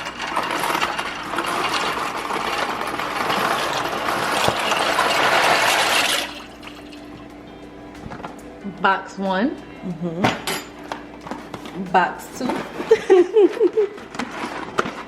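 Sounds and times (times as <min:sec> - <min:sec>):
tap water running into pot: 0:00.0 - 0:07.1.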